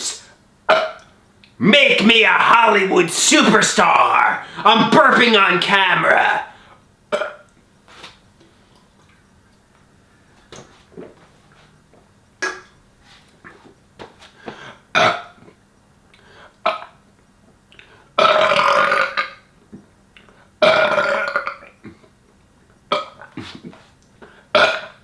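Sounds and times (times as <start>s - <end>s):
man belching: 7.1s - 7.4s, 18.2s - 19.4s, 20.6s - 21.7s, 24.6s - 25.0s.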